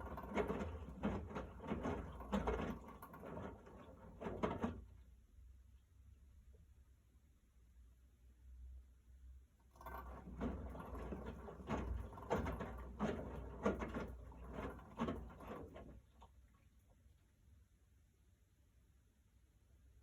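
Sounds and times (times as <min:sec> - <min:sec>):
washing machine drum turning: 0:00.0 - 0:05.0, 0:09.7 - 0:16.3
uneven knocks and rattles: 0:00.0 - 0:05.1, 0:09.7 - 0:16.4.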